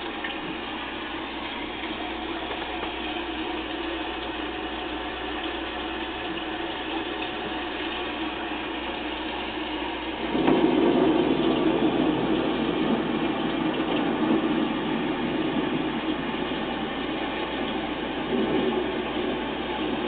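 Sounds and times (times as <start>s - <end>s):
thunder rumbling: 9.6s - 20.0s
steady rattling noise: 10.1s - 20.0s.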